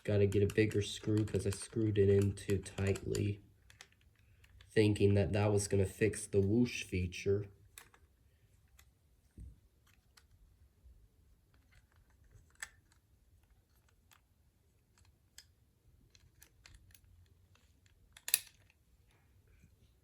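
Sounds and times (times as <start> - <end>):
plastic toy parts clicking: 0.0 - 4.7, 7.7 - 9.0, 11.5 - 18.8.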